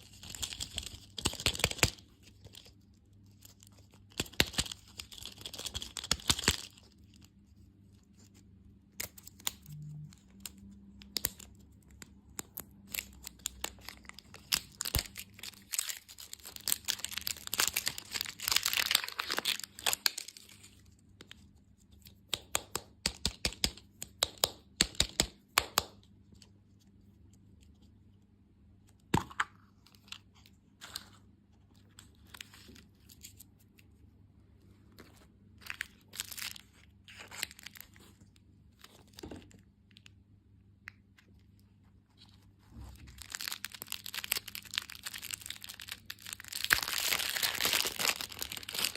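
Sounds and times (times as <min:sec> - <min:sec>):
candy wrappers crinkling: 0:00.0 - 0:07.4, 0:08.1 - 0:21.5, 0:35.0 - 0:40.2, 0:41.2 - 0:48.9.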